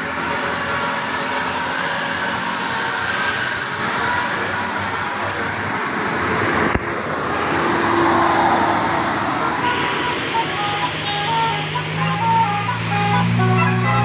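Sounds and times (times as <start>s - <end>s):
bus engine hum: 0.0s - 14.0s
heavy vehicle engine and tyre noise: 0.0s - 14.0s
multi-tone air horn tune: 7.0s - 14.0s.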